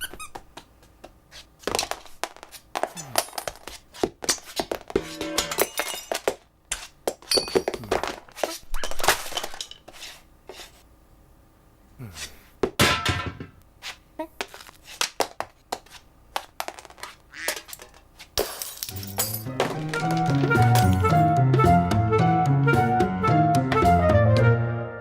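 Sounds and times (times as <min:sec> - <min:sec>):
hard objects knocking and clinking: 0:07.3 - 0:08.2, 0:16.6 - 0:21.3.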